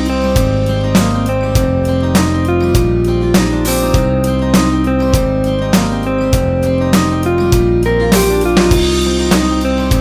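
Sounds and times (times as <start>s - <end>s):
strummed acoustic guitar music: 0.0s - 10.0s.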